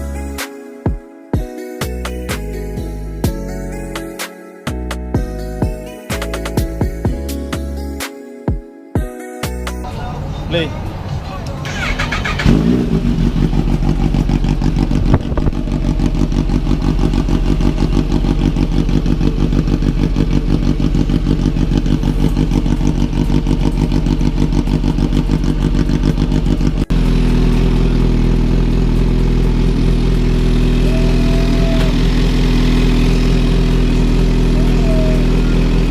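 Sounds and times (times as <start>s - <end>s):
motorcycle engine idling: 11.7s - 35.9s.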